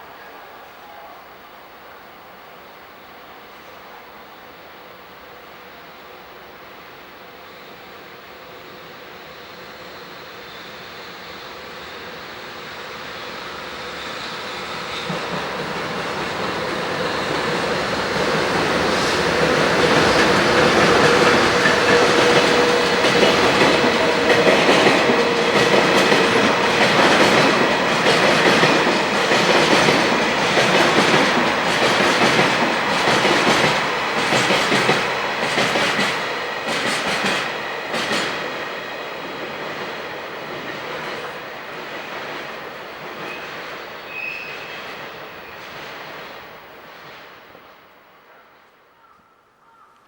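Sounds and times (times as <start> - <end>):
freight train passing: 0.0 - 48.9
wheels clacking over rail joints: 18.2 - 43.7.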